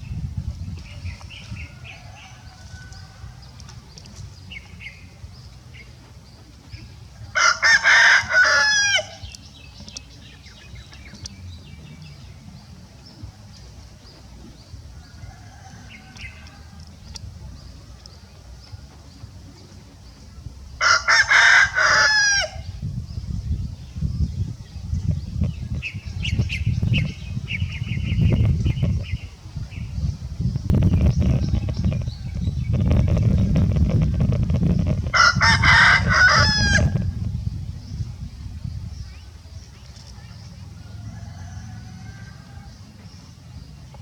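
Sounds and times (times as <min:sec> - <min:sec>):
low steady rumble: 0:00.0 - 0:44.0
rooster crowing: 0:07.3 - 0:09.2, 0:15.0 - 0:16.8, 0:20.8 - 0:22.6, 0:35.1 - 0:37.1, 0:40.8 - 0:42.8.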